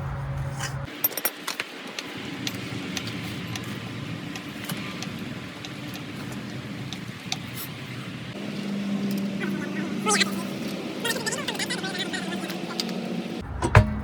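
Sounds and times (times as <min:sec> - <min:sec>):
tools clinking: 0:01.0 - 0:07.0
motor humming: 0:01.8 - 0:14.0.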